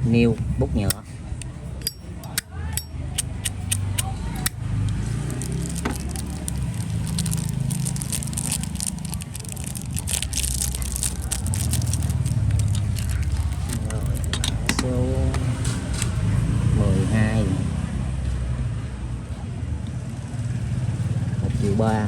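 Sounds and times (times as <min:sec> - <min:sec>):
traffic rumble: 0:00.0 - 0:22.0
lighters clicking and scraping: 0:00.8 - 0:04.6, 0:05.2 - 0:14.6.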